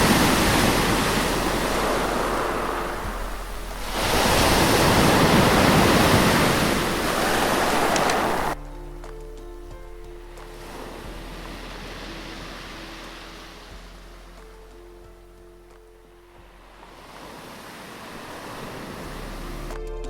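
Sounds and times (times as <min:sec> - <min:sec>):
loud rushing noise: 0:00.0 - 0:08.6
soft background music: 0:00.0 - 0:20.0.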